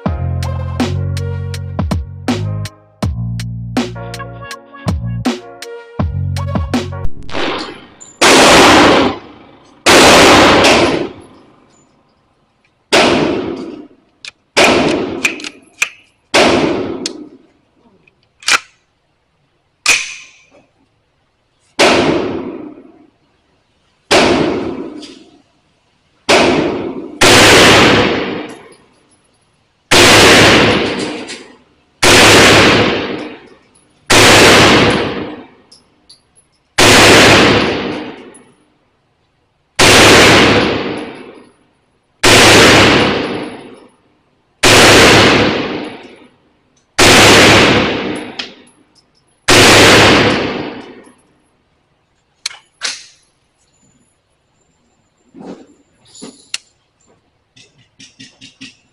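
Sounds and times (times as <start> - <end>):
gunshots: 7.0 - 11.3, 12.9 - 13.9, 14.5 - 15.5, 16.3 - 17.4, 21.8 - 22.9, 24.1 - 25.3, 26.3 - 28.7, 29.9 - 33.5, 34.1 - 35.6, 36.8 - 38.3, 39.8 - 41.4, 42.2 - 43.8, 44.6 - 46.3, 47.0 - 48.6, 49.5 - 51.0.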